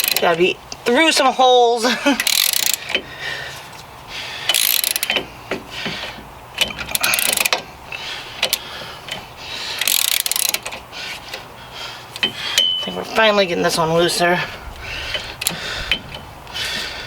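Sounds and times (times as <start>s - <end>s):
socket ratchet clicking: 0.0s - 0.2s, 2.2s - 3.0s, 4.5s - 5.3s, 6.6s - 7.6s, 8.4s - 9.2s, 9.8s - 11.4s.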